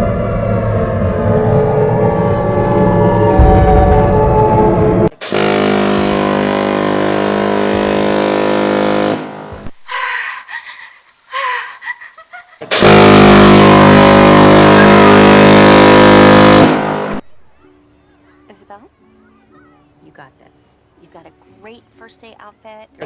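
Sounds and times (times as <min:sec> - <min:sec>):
loud distorted steady tone: 0:00.0 - 0:09.8, 0:12.7 - 0:17.2.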